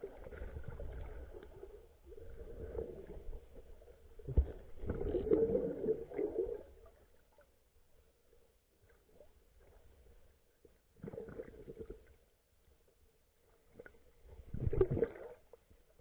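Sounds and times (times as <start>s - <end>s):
underwater water movement: 0.0s - 7.5s, 10.9s - 12.3s, 13.5s - 16.0s.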